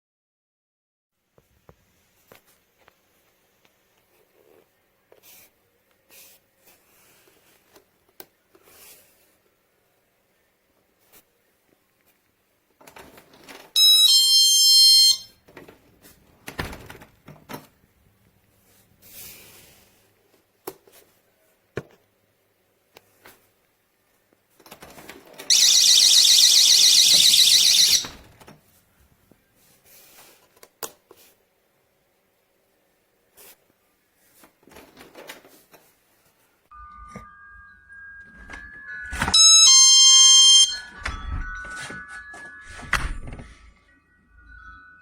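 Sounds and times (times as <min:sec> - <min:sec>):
high-pitched warbling alarm: 0:25.5 - 0:28.2, 0:36.8 - 0:42.9
two-tone electronic chime: 0:25.5 - 0:28.2, 0:36.7 - 0:45.0.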